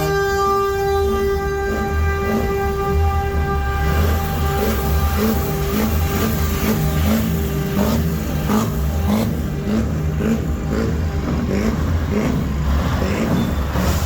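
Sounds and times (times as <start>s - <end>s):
car horn chord: 0.0s - 8.0s
traffic engines rumbling: 0.0s - 14.0s.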